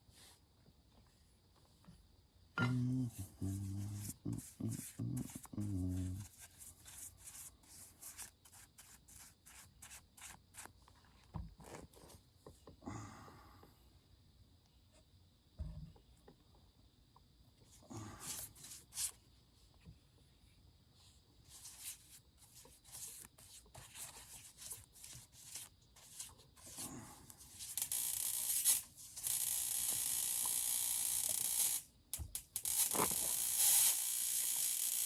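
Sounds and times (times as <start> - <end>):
hissing rubbing strokes on wood: 3.0 - 10.4
steady hiss: 20.9 - 35.0.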